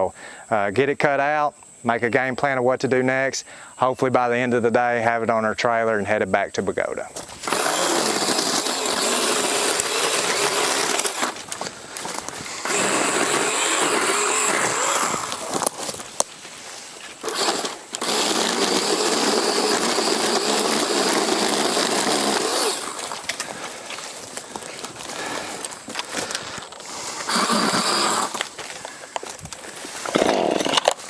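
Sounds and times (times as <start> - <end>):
power saw cutting: 7.4 - 11.5, 12.5 - 15.7, 17.2 - 23.4, 26.8 - 28.5.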